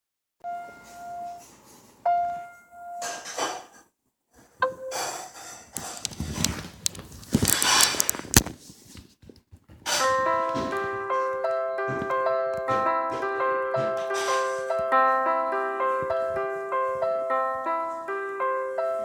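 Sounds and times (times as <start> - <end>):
piano music: 0.4 - 3.6, 4.6 - 5.4, 9.9 - 19.0
rubbing and scraping handling noise: 3.0 - 11.3.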